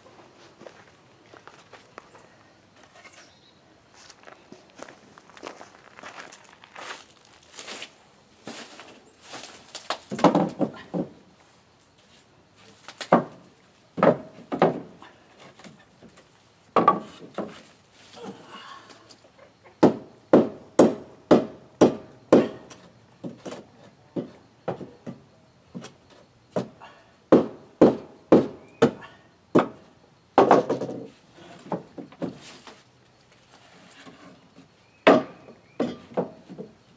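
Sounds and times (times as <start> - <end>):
wooden boards knocking: 10.0 - 11.2, 13.0 - 13.4, 14.0 - 15.0, 16.8 - 17.6, 19.8 - 32.4, 35.0 - 36.8
hammer blows on wooden boards: 13.1 - 15.6, 19.7 - 32.4, 35.0 - 36.8.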